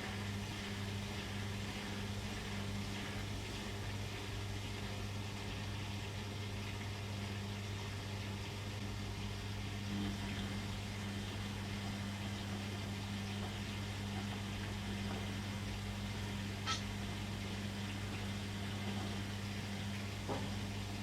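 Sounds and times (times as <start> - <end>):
washing machine running: 0.0 - 21.0.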